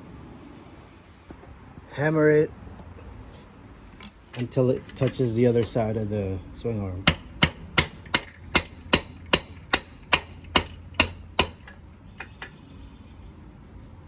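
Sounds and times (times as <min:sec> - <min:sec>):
mallet tapping metal axle: 0:07.0 - 0:12.6.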